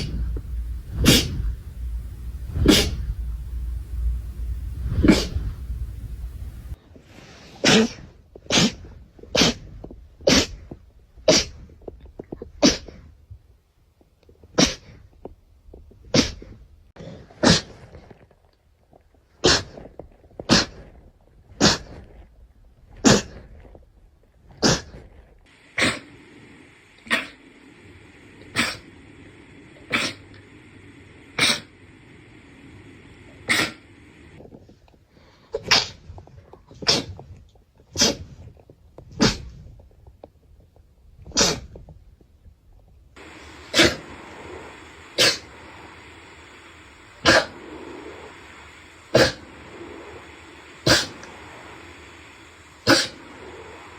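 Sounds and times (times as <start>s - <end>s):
faint steady whine: 0.0s - 6.8s, 25.5s - 34.6s, 43.1s - 53.9s
person sneezing: 41.4s - 41.6s.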